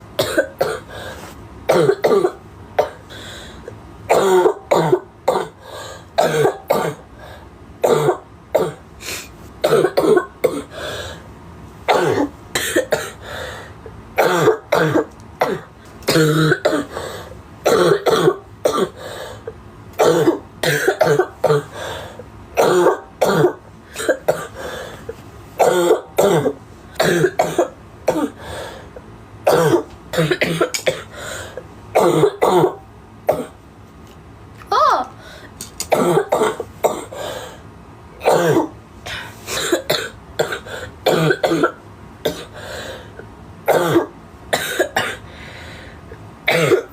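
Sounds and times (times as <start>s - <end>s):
girl coughing: 0.2s - 0.9s, 1.7s - 3.1s, 4.1s - 5.6s, 6.2s - 7.0s, 7.8s - 8.8s, 9.6s - 10.7s, 11.9s - 13.2s, 14.2s - 17.0s, 17.7s - 19.0s, 20.0s - 21.8s, 22.6s - 24.6s, 25.6s - 28.4s, 29.5s - 31.2s, 32.0s - 33.6s, 35.9s - 37.2s, 38.2s - 42.6s, 43.7s - 45.2s, 46.5s - 46.9s.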